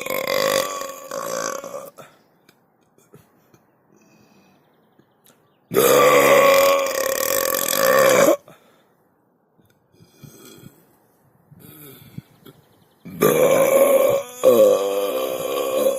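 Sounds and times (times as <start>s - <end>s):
loud burp: 0.0s - 2.0s, 5.7s - 8.4s, 13.1s - 15.9s.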